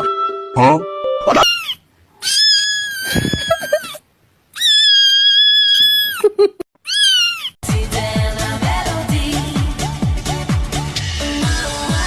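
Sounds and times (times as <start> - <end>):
cat screaming: 1.3 - 6.2, 6.8 - 7.6.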